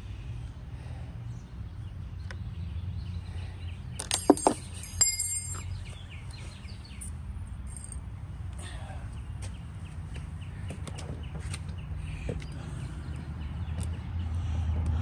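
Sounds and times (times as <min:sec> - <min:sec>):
low outdoor rumble: 0:00.0 - 0:15.0
sharp ringing clicks of parts: 0:04.0 - 0:05.8, 0:07.7 - 0:08.0.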